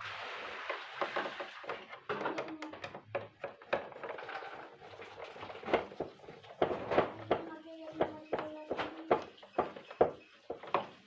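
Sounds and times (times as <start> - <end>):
plastic parts clicking and knocking: 1.1 - 11.0.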